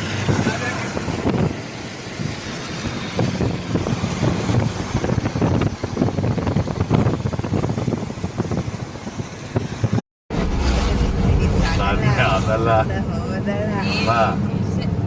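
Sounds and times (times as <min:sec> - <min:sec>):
wind buffeting microphone: 0:00.0 - 0:10.0
road and engine noise: 0:00.0 - 0:15.0.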